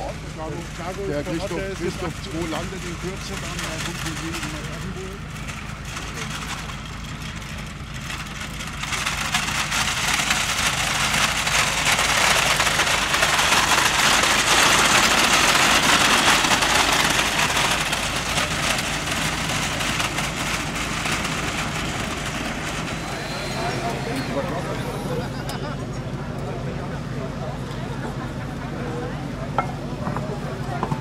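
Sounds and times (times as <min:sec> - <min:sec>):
vehicle engine running: 0:00.0 - 0:31.0
loud rushing hiss: 0:10.7 - 0:25.2.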